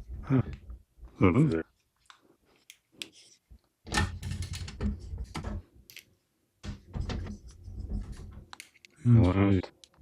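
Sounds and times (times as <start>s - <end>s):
knocking and rattling: 3.9s - 5.7s, 6.6s - 8.5s
clicks and knocks of computer parts: 3.9s - 7.3s.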